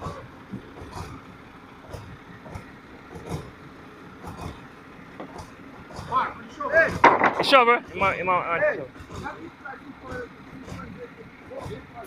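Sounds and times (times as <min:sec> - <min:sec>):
diesel truck engine running: 0:00.0 - 0:12.0
short knocks: 0:06.8 - 0:07.5.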